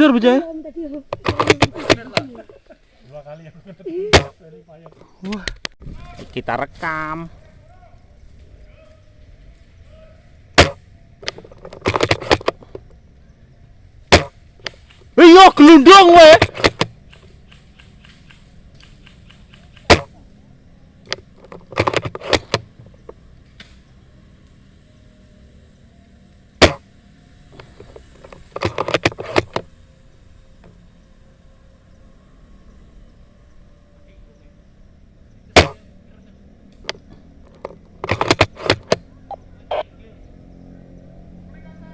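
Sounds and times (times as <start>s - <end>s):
airsoft gun shots: 4.1s - 4.4s, 10.6s - 12.5s, 14.1s - 15.5s, 16.2s - 20.2s, 26.6s - 26.9s, 35.6s - 35.9s.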